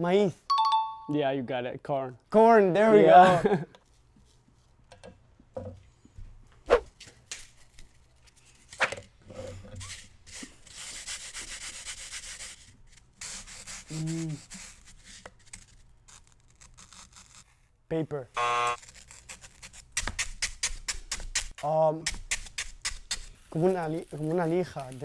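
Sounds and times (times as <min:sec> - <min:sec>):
sandpaper scraping: 0:07.5 - 0:09.0, 0:09.8 - 0:17.6, 0:18.4 - 0:25.0.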